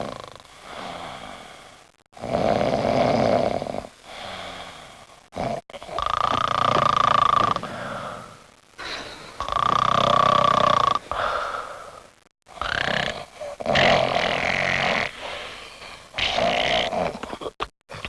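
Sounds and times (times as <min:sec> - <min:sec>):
person snoring with whistling note: 0:02.2 - 0:04.8, 0:05.4 - 0:11.2, 0:12.6 - 0:17.2.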